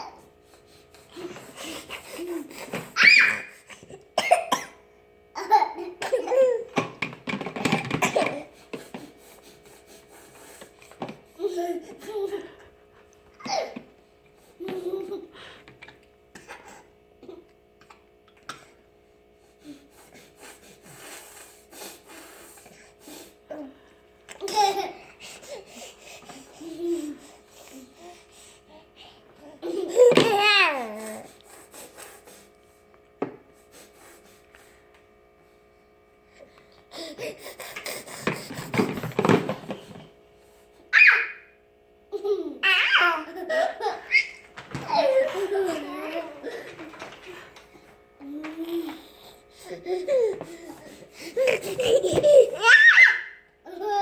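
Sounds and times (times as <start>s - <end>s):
person coughing: 4.2s - 4.8s
small child laughing: 5.4s - 6.8s, 11.4s - 12.6s, 14.6s - 15.4s, 24.4s - 25.6s, 29.4s - 31.3s, 42.1s - 47.4s, 49.7s - 54.0s.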